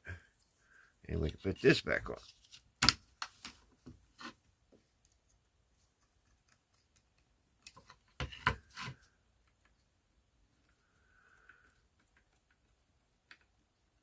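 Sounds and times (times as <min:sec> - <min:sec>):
small parts clicking and tapping: 0:06.0 - 0:08.2, 0:10.5 - 0:13.6.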